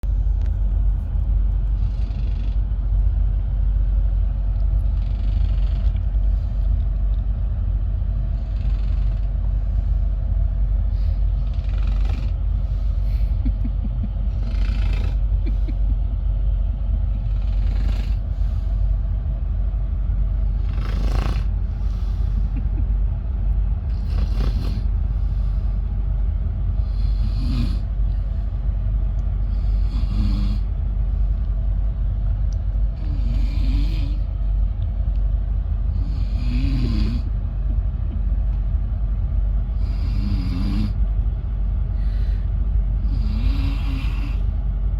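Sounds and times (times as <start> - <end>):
moving train rumble: 0.0 - 44.9
person snoring: 1.8 - 2.6, 4.9 - 6.6, 8.3 - 9.7, 11.0 - 13.7, 14.3 - 15.8, 17.2 - 18.8, 20.5 - 22.8, 23.9 - 25.7, 26.8 - 28.3, 29.4 - 30.7, 33.0 - 34.3, 36.0 - 37.3, 39.8 - 41.0, 43.0 - 44.5.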